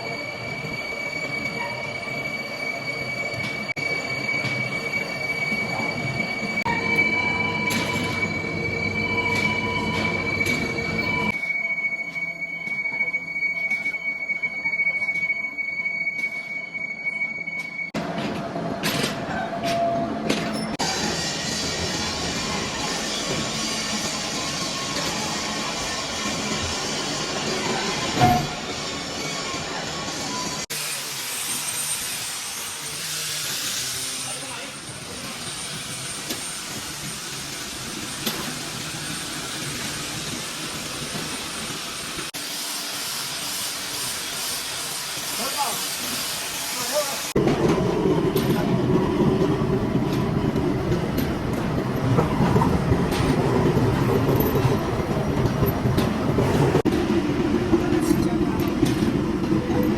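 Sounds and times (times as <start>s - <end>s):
high-pitched metallic squeal: 0.0s - 18.0s, 19.3s - 41.8s.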